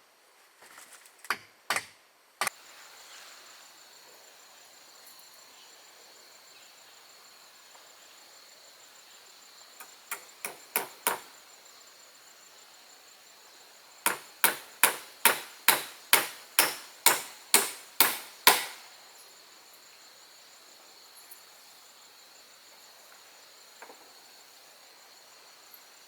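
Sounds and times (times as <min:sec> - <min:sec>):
tool striking wood: 0:01.3 - 0:02.5, 0:10.1 - 0:11.3, 0:14.1 - 0:18.9.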